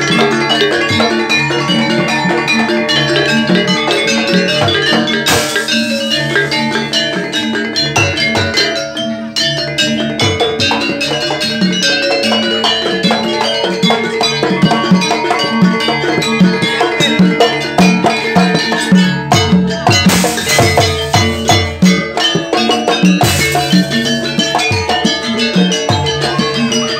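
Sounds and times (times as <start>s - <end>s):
tuned metal percussion: 0.0s - 26.9s
hand drums in fast strokes: 3.5s - 8.7s, 12.4s - 26.6s.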